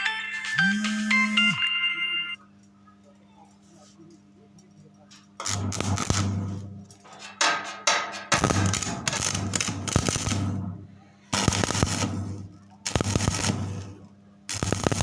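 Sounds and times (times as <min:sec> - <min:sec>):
welding arc crackling: 0:05.4 - 0:07.2, 0:08.2 - 0:15.0.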